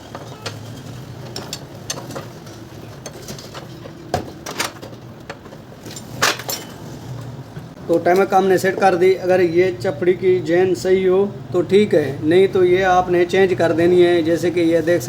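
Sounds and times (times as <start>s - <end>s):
metal tools and parts clinking: 0.0s - 7.4s.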